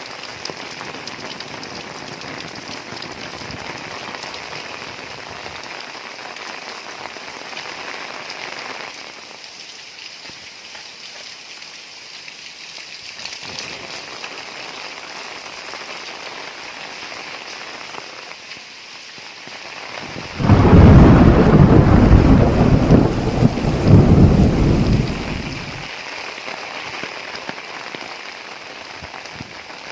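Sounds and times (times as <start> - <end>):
heavy rain falling: 0.0 - 29.9
thunderclap rumbling: 20.0 - 25.9.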